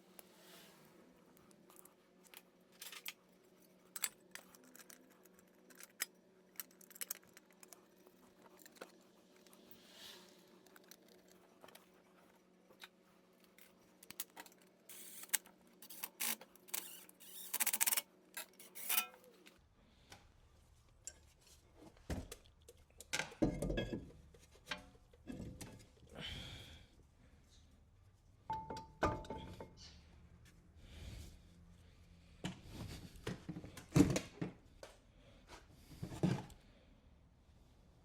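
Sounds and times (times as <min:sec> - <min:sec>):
metal tools clinking and scraping: 0:13.5 - 0:19.5.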